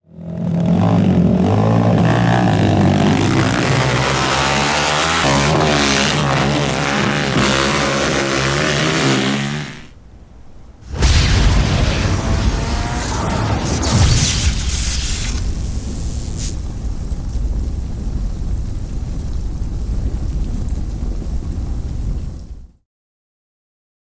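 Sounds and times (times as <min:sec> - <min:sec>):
atv engine revving: 0:00.1 - 0:10.2, 0:11.9 - 0:13.9.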